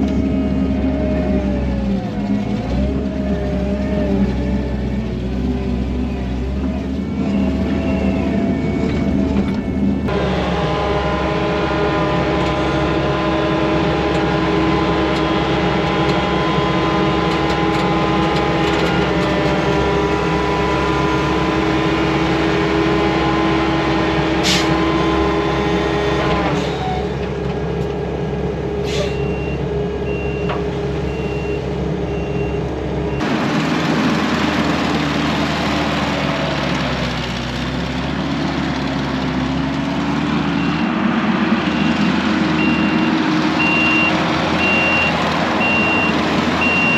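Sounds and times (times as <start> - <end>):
heavy machinery engines running: 0.0 - 46.9
backup alarm beeping: 41.7 - 46.9.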